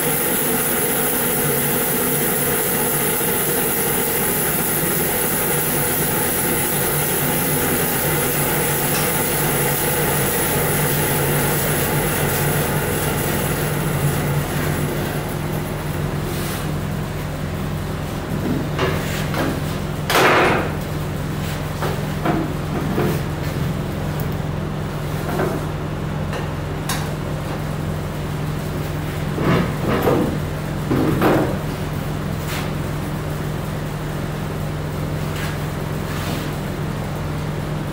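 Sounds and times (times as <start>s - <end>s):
band saw motor hum: 0.0s - 18.4s.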